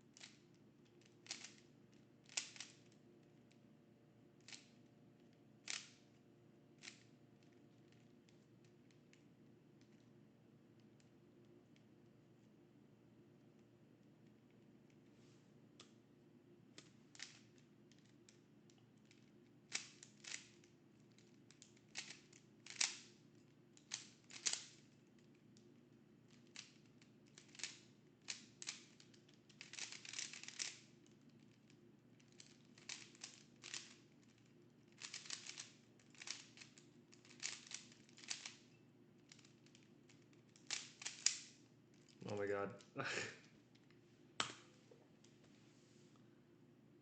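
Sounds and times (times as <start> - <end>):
puzzle cube clicking: 1.0 - 1.6, 2.2 - 2.9, 5.6 - 6.0, 19.1 - 23.2, 23.8 - 24.9, 26.3 - 30.9, 32.2 - 34.3, 34.9 - 38.6, 39.3 - 41.5.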